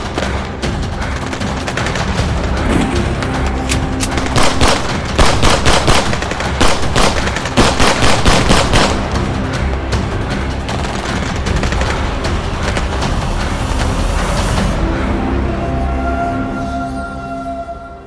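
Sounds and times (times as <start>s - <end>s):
rapid machine-gun fire: 0.0s - 2.6s, 3.2s - 9.4s
background music: 0.0s - 18.0s.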